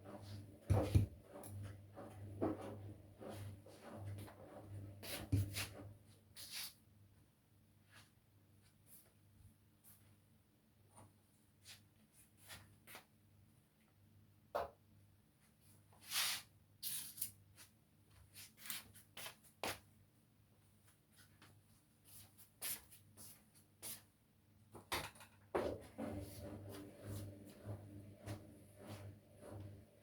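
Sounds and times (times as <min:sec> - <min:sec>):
washing machine motor rumble: 0:00.0 - 0:06.0, 0:25.6 - 0:30.0
laundry tumbling in washing drum: 0:00.0 - 0:06.1, 0:24.8 - 0:30.0.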